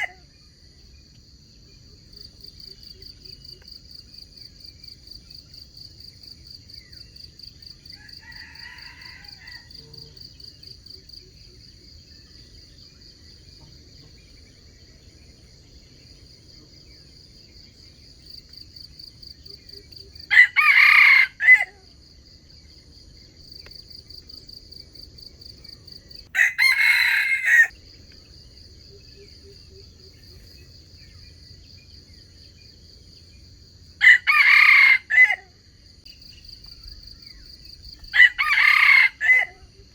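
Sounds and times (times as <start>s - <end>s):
rooster crowing: 0.0s - 0.2s, 7.9s - 10.2s, 20.3s - 21.9s, 26.3s - 27.8s, 34.0s - 35.5s, 38.1s - 39.7s
crickets trilling: 0.0s - 39.9s.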